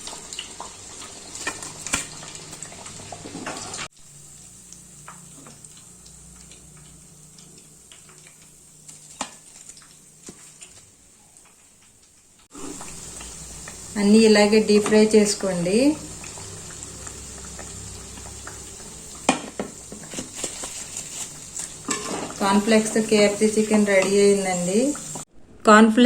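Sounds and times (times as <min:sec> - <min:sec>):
oil sizzling with pops: 0:00.0 - 0:25.3.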